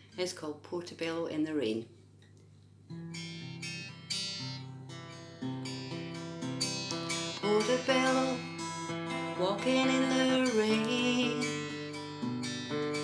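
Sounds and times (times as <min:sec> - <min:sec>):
acoustic guitar chords: 0:02.9 - 0:13.0.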